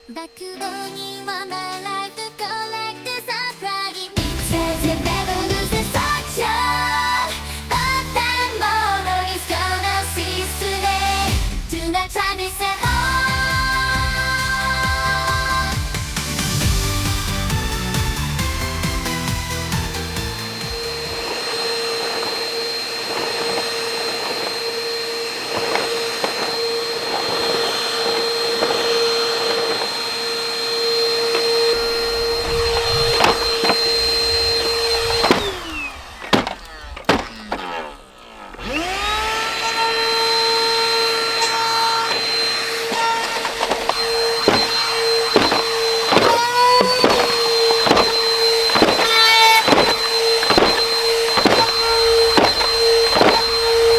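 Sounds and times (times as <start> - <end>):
vacuum cleaner whine: 4.1 - 53.9
knocks and rattles: 18.8 - 39.0, 41.4 - 53.9.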